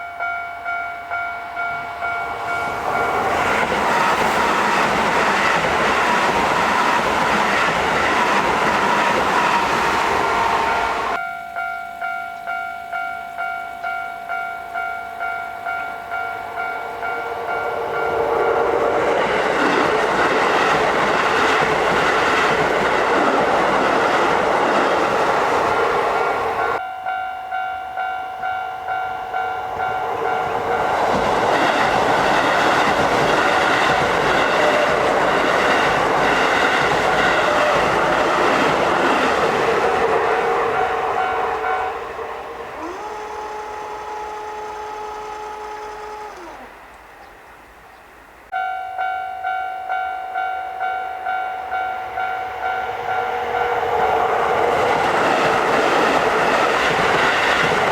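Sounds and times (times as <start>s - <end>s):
level crossing warning bell: 0.0s - 42.0s, 48.5s - 57.9s
train rolling over rails: 1.1s - 11.2s, 14.8s - 26.8s, 28.4s - 44.3s, 50.8s - 57.9s.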